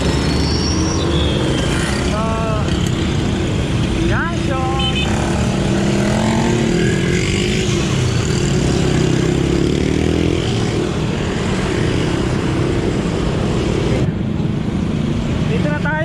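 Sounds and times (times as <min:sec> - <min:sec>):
steady road noise: 0:00.0 - 0:16.0
vehicle engines running: 0:00.0 - 0:16.0
vehicle passing by: 0:05.0 - 0:14.0.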